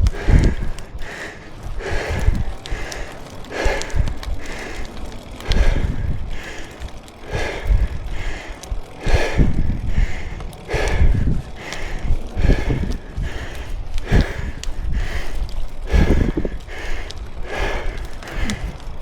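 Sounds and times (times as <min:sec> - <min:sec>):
person breathing hard: 0:00.0 - 0:19.0.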